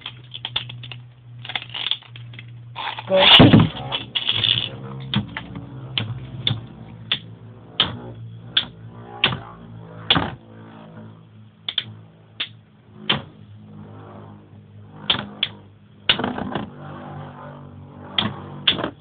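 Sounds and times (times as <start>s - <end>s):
spinning tops clashing: 2.8s - 4.7s.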